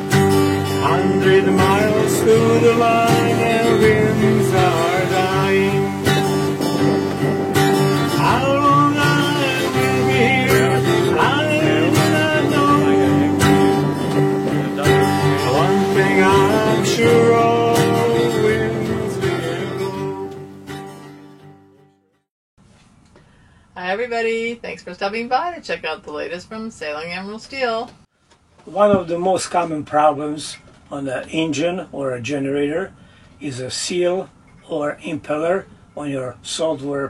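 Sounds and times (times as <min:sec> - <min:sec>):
acoustic guitar music: 0:00.0 - 0:22.3
gliding lead line: 0:01.0 - 0:19.5.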